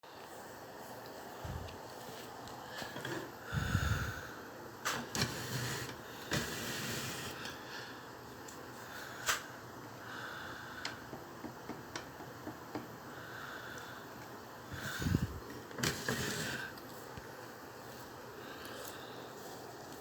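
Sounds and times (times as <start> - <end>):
electric fan running: 0.0 - 20.0.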